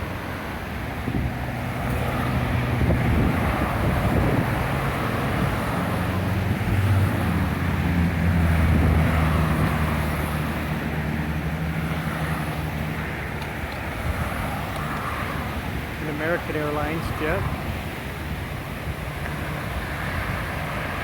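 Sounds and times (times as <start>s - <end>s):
wind buffeting microphone: 0.0s - 21.0s
jet engines droning: 9.8s - 18.4s.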